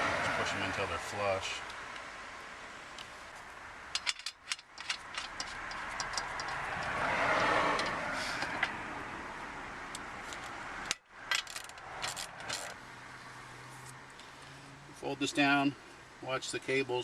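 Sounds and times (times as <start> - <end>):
vehicle passing by: 0.0 - 1.3, 5.5 - 10.9, 11.7 - 15.4.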